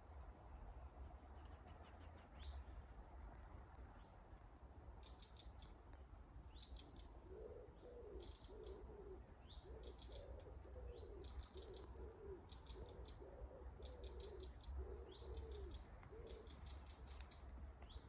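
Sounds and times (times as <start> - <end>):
faint wood pigeon cooing: 6.5 - 18.0.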